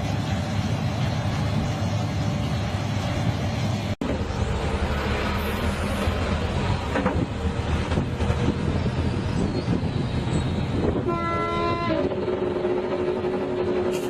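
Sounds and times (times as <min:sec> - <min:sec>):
heavy machine engine rumbling: 0:00.0 - 0:11.0
short horn-like tone: 0:11.0 - 0:12.2.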